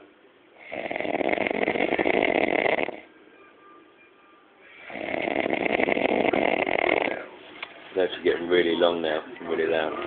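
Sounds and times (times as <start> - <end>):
man snoring loudly: 0.6 - 3.1, 4.8 - 7.3.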